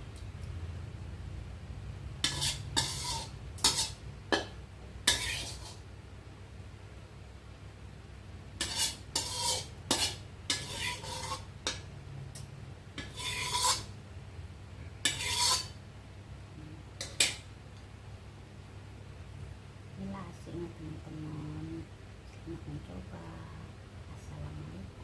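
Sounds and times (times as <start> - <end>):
metal spatula scraping a pan: 2.2 - 4.0, 5.0 - 5.8, 8.6 - 11.8, 13.0 - 13.9, 15.0 - 15.8, 17.0 - 17.4.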